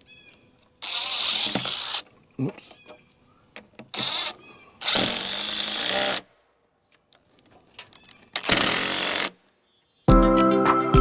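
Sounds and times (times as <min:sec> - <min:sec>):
handheld power tool: 0:00.8 - 0:02.0, 0:03.9 - 0:06.3, 0:08.4 - 0:09.4.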